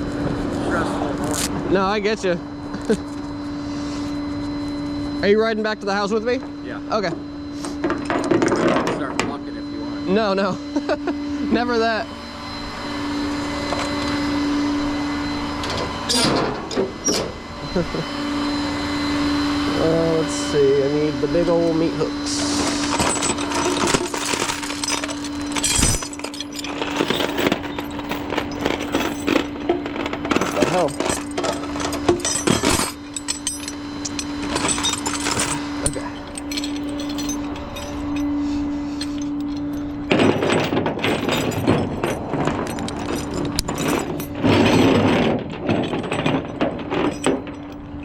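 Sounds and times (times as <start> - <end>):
steady hum: 0.0 - 48.0
chains and hooks clanking: 15.6 - 17.3, 22.6 - 48.0.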